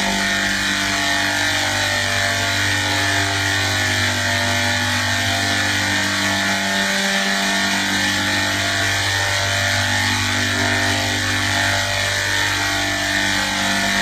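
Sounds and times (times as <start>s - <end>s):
machine drone with hiss: 0.0s - 14.0s.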